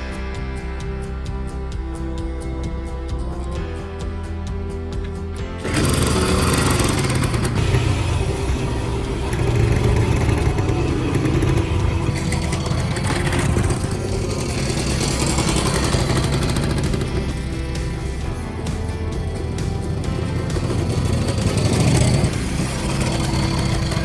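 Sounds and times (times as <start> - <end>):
motorcycle engine running: 4.0 - 24.0.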